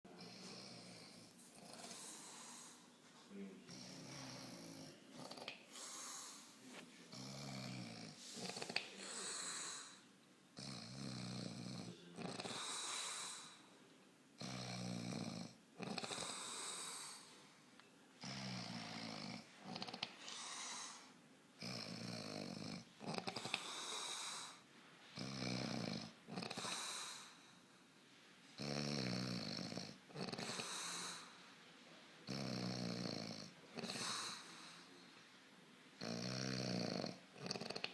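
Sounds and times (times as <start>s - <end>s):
man snoring: 10.6s - 13.1s, 14.4s - 17.0s, 25.2s - 26.8s, 28.6s - 31.0s, 32.3s - 34.5s, 36.0s - 37.9s.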